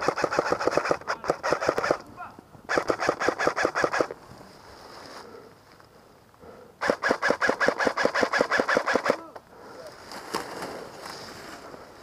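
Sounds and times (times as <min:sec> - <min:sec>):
airsoft gun firing full auto: 0:00.0 - 0:02.0, 0:02.7 - 0:04.1, 0:06.8 - 0:09.2.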